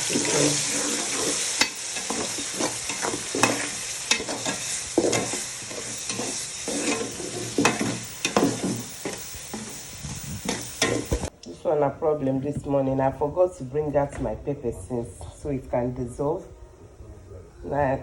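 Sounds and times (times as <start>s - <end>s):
food sizzling in a pot: 0.0s - 11.3s
spoon scraping a pot: 0.0s - 11.3s.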